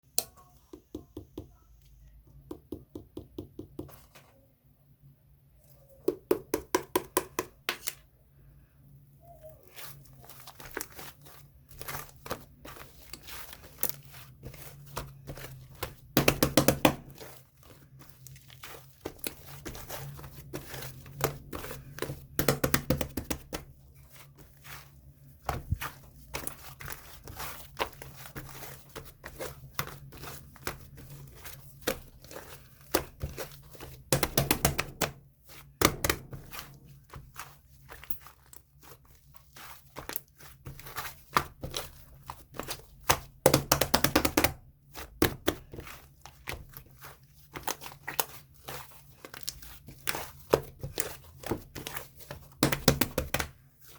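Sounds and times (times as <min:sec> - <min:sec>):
slime clicking and crackling: 0:25.5 - 0:53.9.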